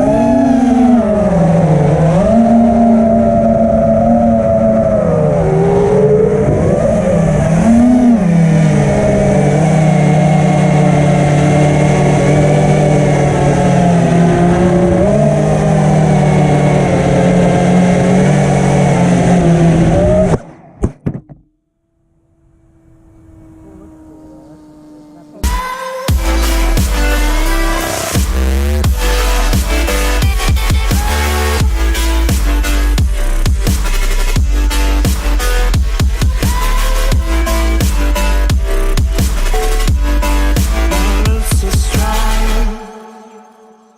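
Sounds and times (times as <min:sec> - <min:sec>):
quadcopter motors whining: 0:00.0 - 0:20.4, 0:22.6 - 0:43.8.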